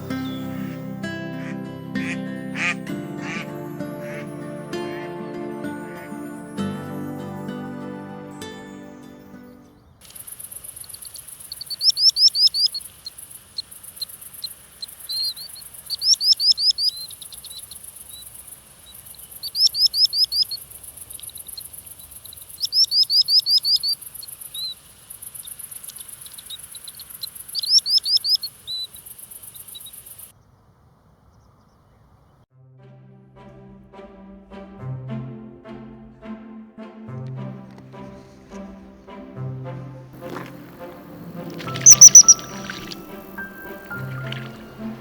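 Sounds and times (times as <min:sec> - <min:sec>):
songbird singing: 0:00.0 - 0:32.5, 0:37.7 - 0:45.0
bird soft single calls: 0:41.6 - 0:43.4.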